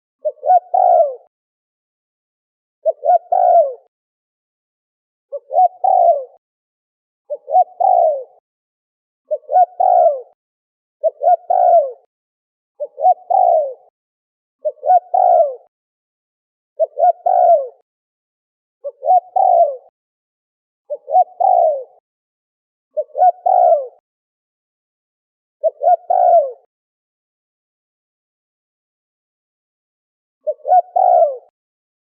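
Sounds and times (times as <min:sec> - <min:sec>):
dove cooing: 0:00.2 - 0:01.3, 0:02.8 - 0:03.9, 0:05.3 - 0:06.4, 0:07.3 - 0:08.4, 0:09.3 - 0:10.4, 0:11.0 - 0:12.1, 0:12.8 - 0:13.9, 0:14.6 - 0:15.7, 0:16.8 - 0:17.8, 0:18.8 - 0:19.9, 0:20.9 - 0:22.0, 0:23.0 - 0:24.0, 0:25.6 - 0:26.7, 0:30.4 - 0:31.5.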